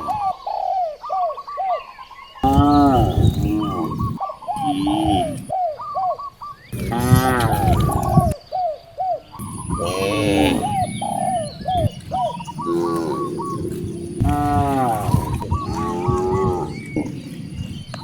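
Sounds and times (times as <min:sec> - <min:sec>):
bird calling: 0:00.0 - 0:18.0
cows mooing: 0:02.4 - 0:05.5, 0:06.8 - 0:08.4, 0:09.4 - 0:18.0.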